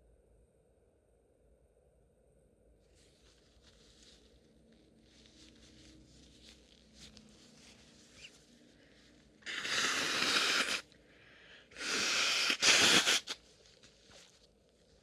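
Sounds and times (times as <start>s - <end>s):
woman sneezing: 9.5s - 10.8s, 11.8s - 13.4s.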